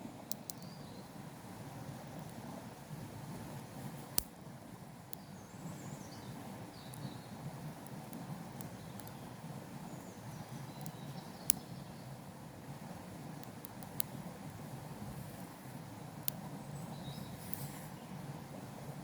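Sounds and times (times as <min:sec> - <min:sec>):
faint bird chirps: 0:09.9 - 0:12.1, 0:16.6 - 0:18.2.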